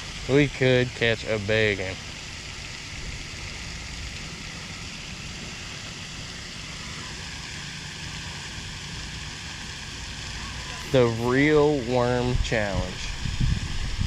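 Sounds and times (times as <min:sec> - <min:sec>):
faint thin whine: 0:00.3 - 0:13.4
steady rushing noise: 0:02.8 - 0:14.0.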